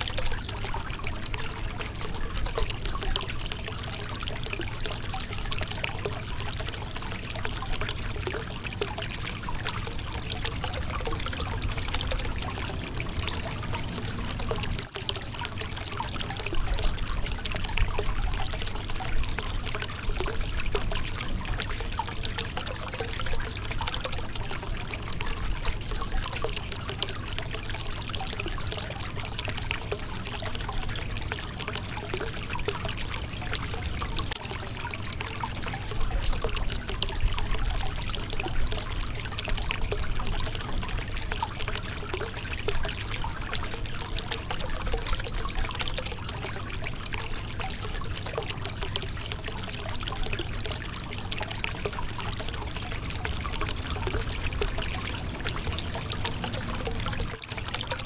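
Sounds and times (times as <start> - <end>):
river water splashing over rocks: 8.6 - 18.3, 32.2 - 58.0.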